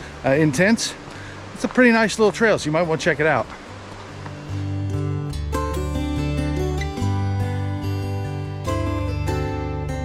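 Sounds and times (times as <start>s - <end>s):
acoustic guitar music: 0.0s - 10.0s
steady bass: 4.6s - 10.0s.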